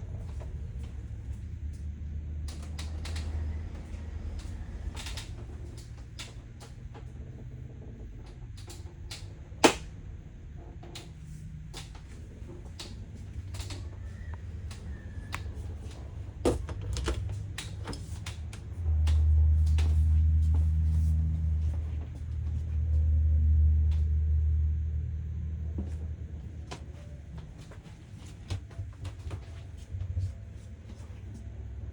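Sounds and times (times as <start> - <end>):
loud low rumble: 0.0 - 31.9
low hum: 0.0 - 31.9
scattered clicks and knocks: 0.1 - 20.6.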